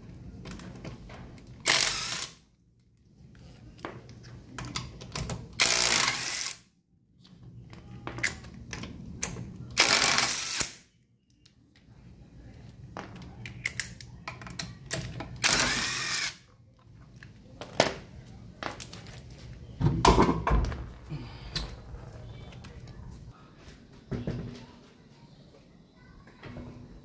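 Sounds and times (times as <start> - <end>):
power tool bursts: 1.7 - 2.4
clicking and tapping of tools: 13.0 - 15.4.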